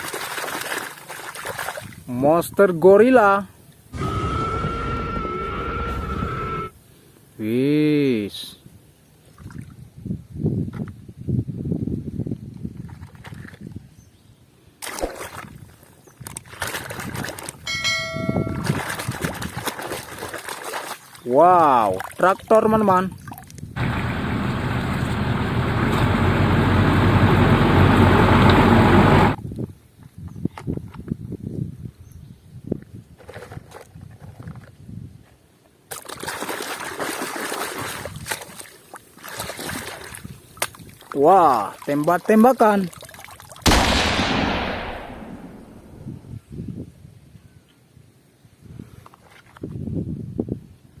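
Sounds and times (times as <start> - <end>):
water splashing and trickling: 0.0 - 2.2, 9.2 - 10.0, 12.6 - 13.9, 14.8 - 25.3, 35.9 - 43.7
bell-like metallic ring: 17.7 - 18.7.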